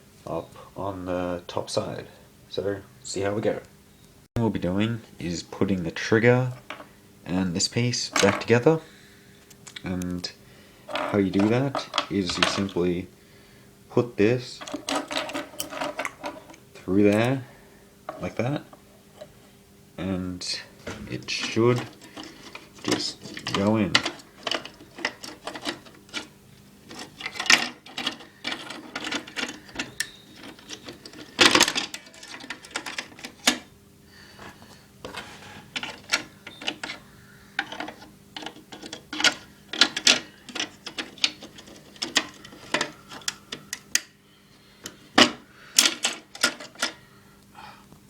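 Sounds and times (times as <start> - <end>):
faint steady hum: 0.0 - 48.0
plastic parts clicking and knocking: 6.6 - 6.9, 10.9 - 12.8, 14.6 - 16.6, 20.8 - 33.7, 35.0 - 37.0, 37.6 - 44.1, 44.8 - 47.0.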